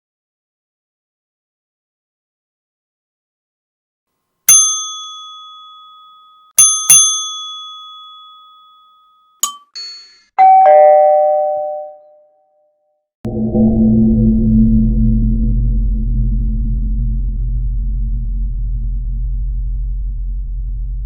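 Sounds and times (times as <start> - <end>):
lower-pitched bell ringing: 4.5 - 9.6, 10.4 - 12.1
small high-pitched bell ringing: 4.5 - 12.2.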